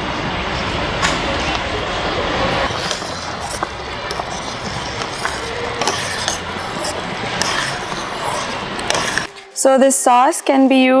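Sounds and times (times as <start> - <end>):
spoon clinking and scraping pan: 2.6 - 10.6.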